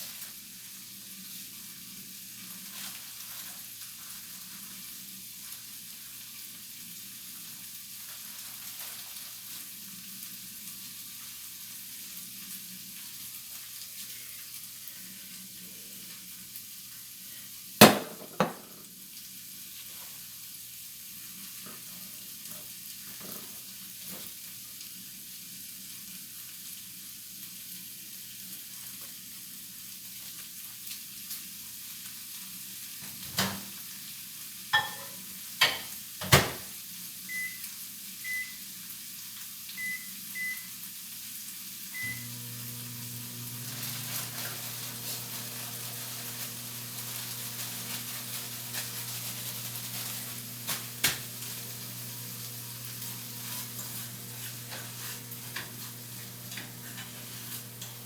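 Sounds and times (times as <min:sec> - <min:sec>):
keypad beeps: 0:37.3 - 0:37.6, 0:38.3 - 0:38.6, 0:39.8 - 0:40.6
microwave oven humming: 0:42.0 - 0:58.0.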